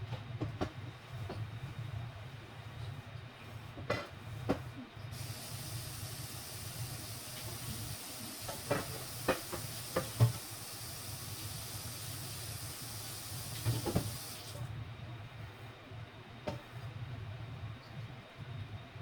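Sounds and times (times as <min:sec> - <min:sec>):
food sizzling in hot oil: 0:05.2 - 0:14.6.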